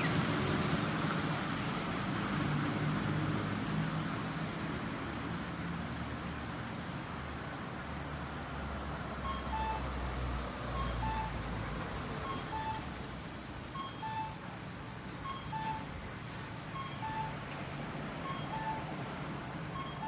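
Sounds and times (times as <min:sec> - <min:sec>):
traffic rumble: 0:00.0 - 0:20.0
crossing signal beeping: 0:09.2 - 0:10.0, 0:10.6 - 0:13.0, 0:13.7 - 0:20.0.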